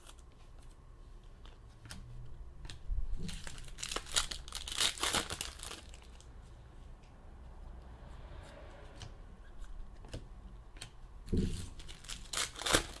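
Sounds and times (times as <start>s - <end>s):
packaging crinkling and tearing: 3.2s - 6.3s, 11.5s - 13.0s.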